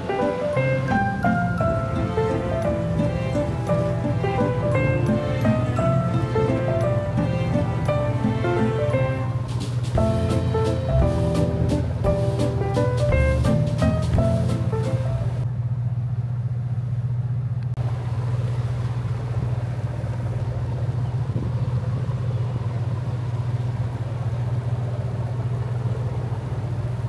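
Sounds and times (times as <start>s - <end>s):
ferry engine droning: 0.0s - 27.0s.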